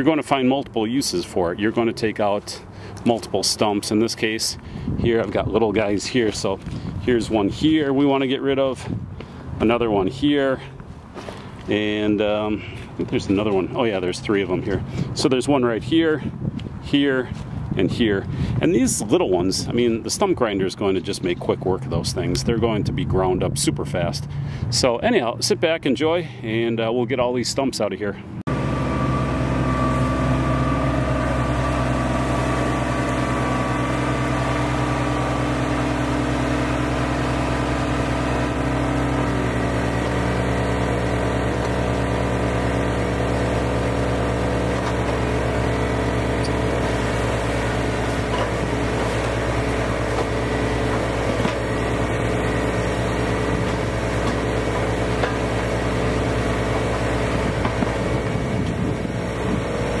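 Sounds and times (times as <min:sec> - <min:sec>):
machine engine running: 0:28.5 - 1:00.0.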